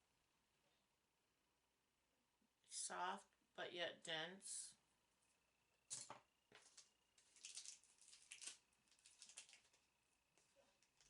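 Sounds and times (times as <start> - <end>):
faint plastic packaging clicks: 5.9 - 11.0.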